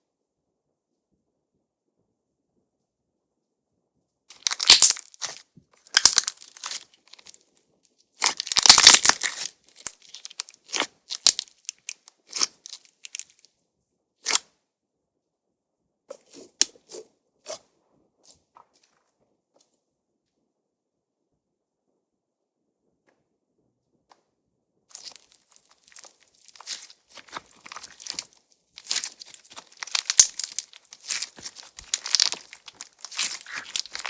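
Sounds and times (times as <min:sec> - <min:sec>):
slime crackling and popping: 0:04.3 - 0:07.4, 0:08.2 - 0:13.4, 0:24.9 - 0:34.0.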